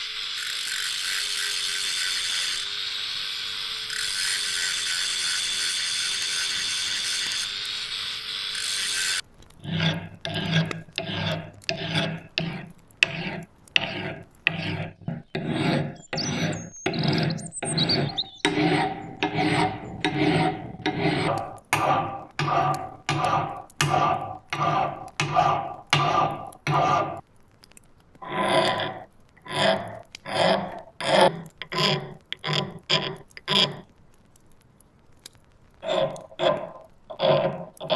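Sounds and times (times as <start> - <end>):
file rasping in push strokes: 8.6 - 27.2, 28.2 - 33.8, 35.8 - 37.9.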